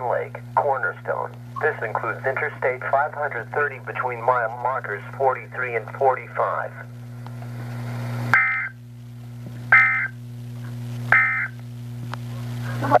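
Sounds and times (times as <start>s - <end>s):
electrical hum: 0.0s - 13.0s
warbling data tones: 8.3s - 8.8s, 9.7s - 10.2s, 11.1s - 11.6s.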